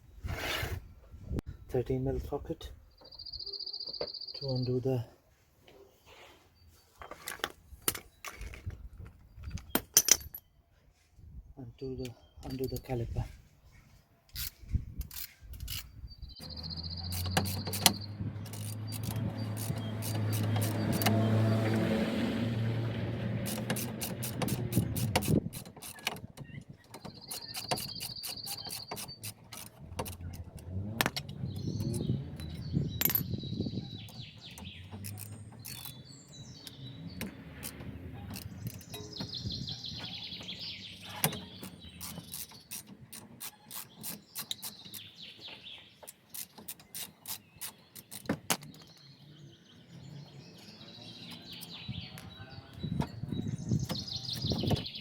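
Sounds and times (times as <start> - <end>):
birds chirping: 1.5 - 10.8, 11.4 - 55.0
socket ratchet clicking: 17.0 - 21.1, 23.4 - 33.2, 34.6 - 36.8, 41.2 - 45.2, 46.0 - 48.9.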